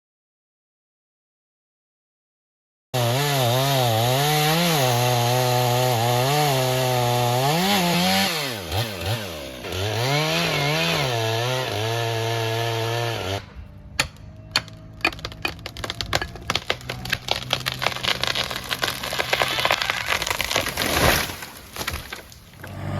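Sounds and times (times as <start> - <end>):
chainsaw cutting wood: 3.0 - 22.9
wood cracking and snapping: 14.0 - 22.8.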